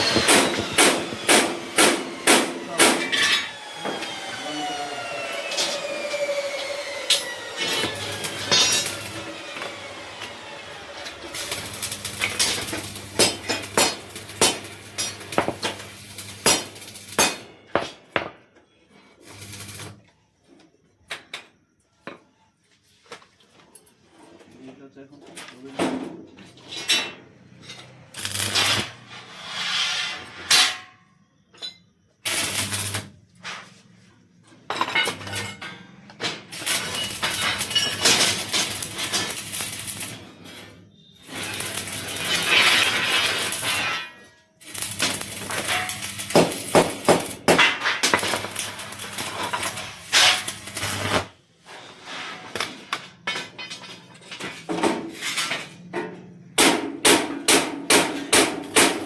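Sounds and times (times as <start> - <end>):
arc welding crackling and sizzling: 0.0 - 3.2, 5.4 - 17.4, 19.2 - 20.0, 28.1 - 29.7, 32.2 - 33.1, 36.5 - 51.4.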